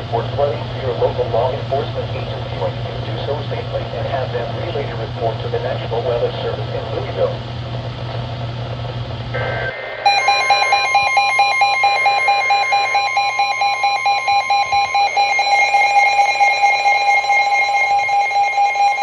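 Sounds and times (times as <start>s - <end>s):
steady tone: 9.3s - 19.0s
rapidly warbling alarm beep: 9.4s - 19.0s.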